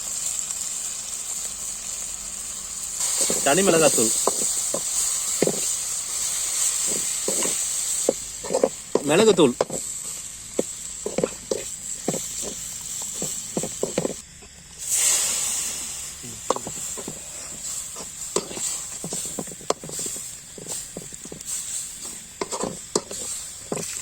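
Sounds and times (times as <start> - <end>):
spices sizzling in a hot pan: 0.0 - 24.0
spatula scraping and knocking: 3.2 - 5.8, 6.8 - 14.2, 16.5 - 24.0.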